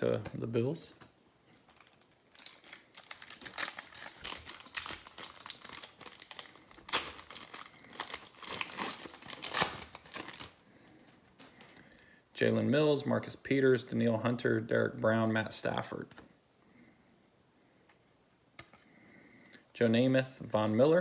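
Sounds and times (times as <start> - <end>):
card pack wrapper crinkling: 1.6 - 10.6.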